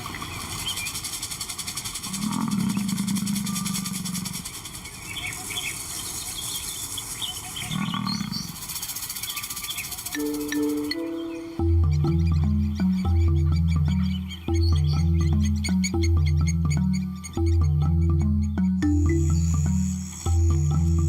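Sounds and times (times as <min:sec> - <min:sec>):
small chirps: 0:00.0 - 0:21.0
lion calling: 0:02.0 - 0:04.6, 0:10.2 - 0:21.0
music: 0:10.2 - 0:21.0
pulsing high drone: 0:10.2 - 0:21.0.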